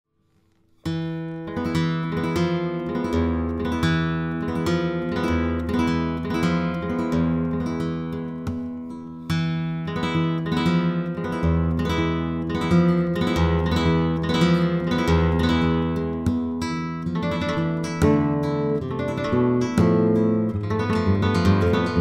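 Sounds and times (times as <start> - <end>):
flamenco guitar playing: 0.6 - 22.0.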